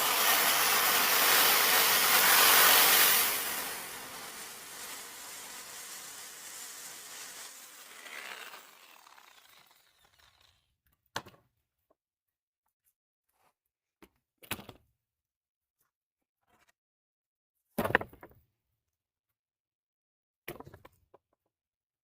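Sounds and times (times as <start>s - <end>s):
steady hiss: 0.0s - 9.0s.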